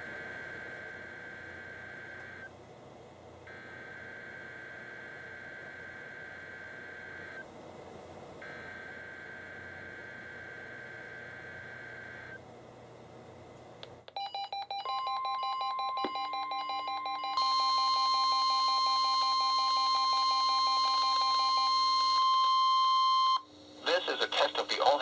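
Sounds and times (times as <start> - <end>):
steady warning alarm tone: 3.5 - 7.4, 8.4 - 12.4, 14.2 - 23.5
faint radio hiss: 23.8 - 25.0.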